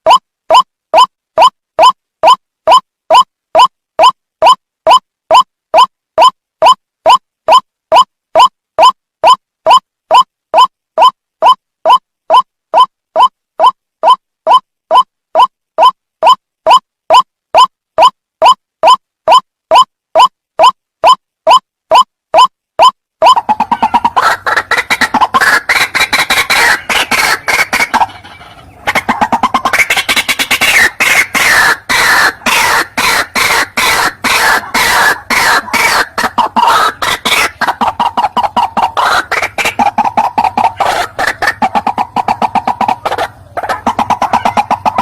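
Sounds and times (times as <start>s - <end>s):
waterhen calling rapid notes: 0.0s - 45.0s.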